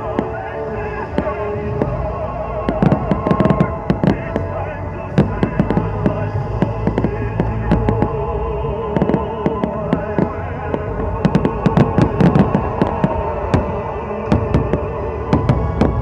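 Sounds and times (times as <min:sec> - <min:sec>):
fireworks bursting and crackling: 0:00.0 - 0:16.0
music playing: 0:00.0 - 0:16.0.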